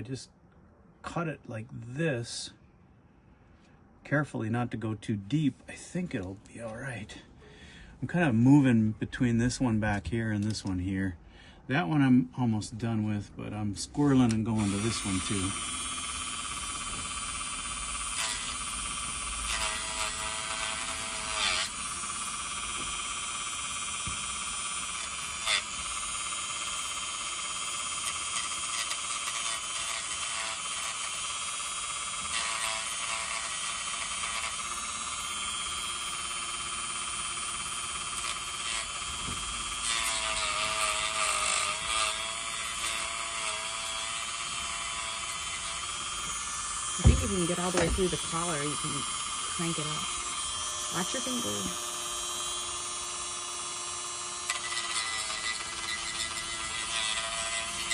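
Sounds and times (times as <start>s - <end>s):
rotary tool whining: 13.8s - 57.9s.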